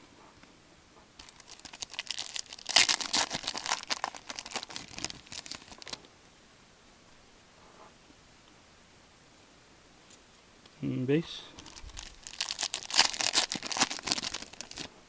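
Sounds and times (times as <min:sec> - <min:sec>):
plastic wrapper tearing and crinkling: 0:01.2 - 0:06.0, 0:11.6 - 0:15.0.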